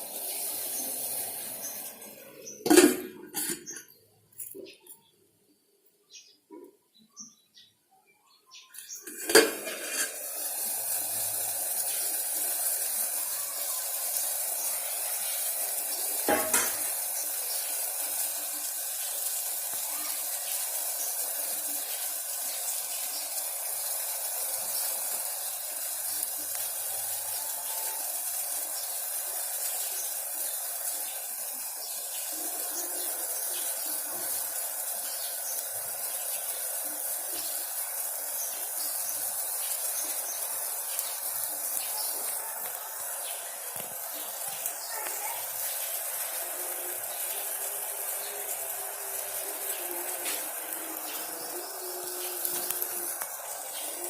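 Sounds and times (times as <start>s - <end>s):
pan sizzling: 0.0s - 5.0s, 8.8s - 54.0s
metal pan clanking: 2.6s - 3.9s, 9.0s - 10.3s, 16.2s - 16.9s.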